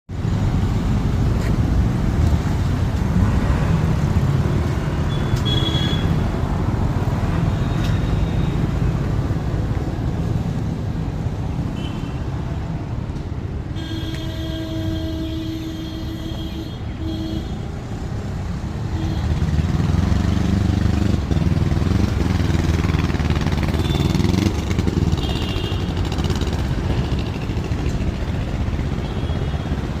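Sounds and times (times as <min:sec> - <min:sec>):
vehicle engines running: 0:00.1 - 0:11.7, 0:17.6 - 0:30.0
engine revving and passing: 0:00.4 - 0:05.2, 0:18.0 - 0:29.0
car horn: 0:05.0 - 0:06.3, 0:11.7 - 0:12.2, 0:13.7 - 0:17.7, 0:18.9 - 0:19.6, 0:23.7 - 0:24.5, 0:25.1 - 0:26.0, 0:29.0 - 0:29.9.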